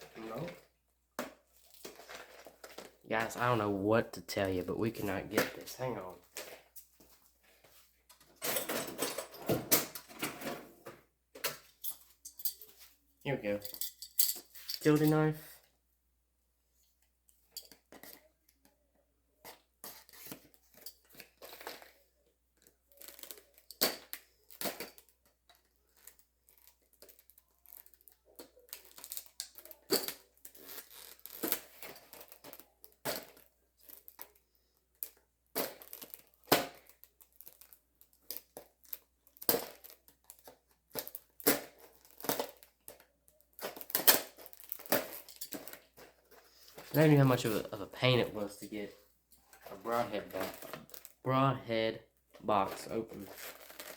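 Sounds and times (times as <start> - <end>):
packaging crackling and tearing: 22.6 - 46.2, 49.7 - 51.2, 52.6 - 53.9.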